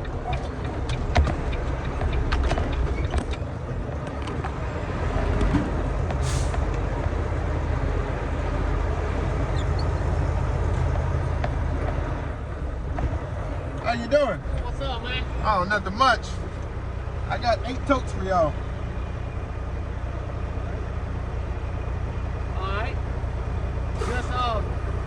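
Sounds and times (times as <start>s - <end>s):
diesel truck engine droning: 0.0s - 25.0s
short hiss: 24.0s - 24.3s.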